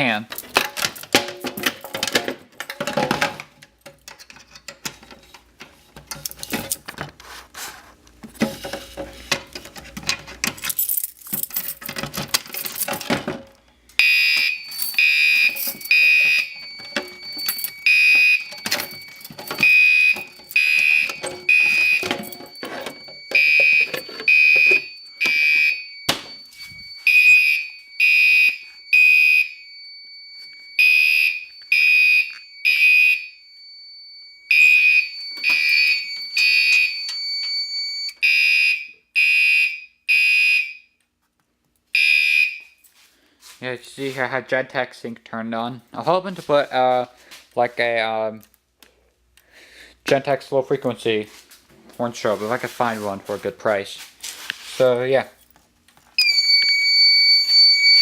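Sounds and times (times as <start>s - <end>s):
fire alarm horns pulsing: 14.0s - 41.0s, 42.0s - 42.8s, 56.2s - 58.0s.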